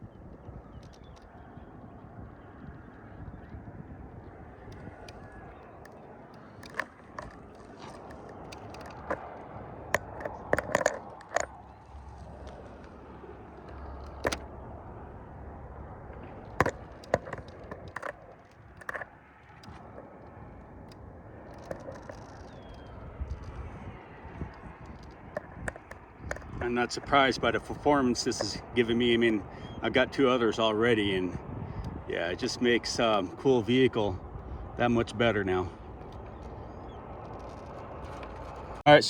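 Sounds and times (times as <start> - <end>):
tyres knocking and scraping on rock: 5.0 - 11.6, 13.7 - 14.5, 16.5 - 20.1, 21.5 - 22.7, 25.2 - 27.2.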